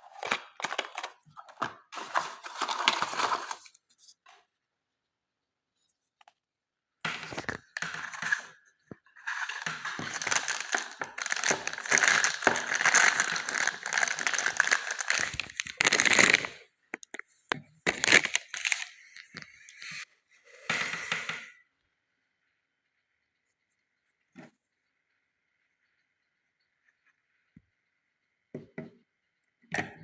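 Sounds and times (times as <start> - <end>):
packaging crinkling and rustling: 0.0 - 3.8, 9.2 - 17.2, 17.8 - 19.6.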